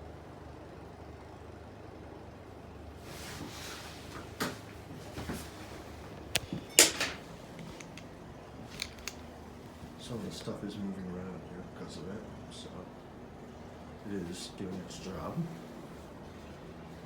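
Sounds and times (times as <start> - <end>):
ceiling fan humming: 0.0 - 17.0
sharp clacks and rustles: 6.2 - 8.1, 8.7 - 9.3.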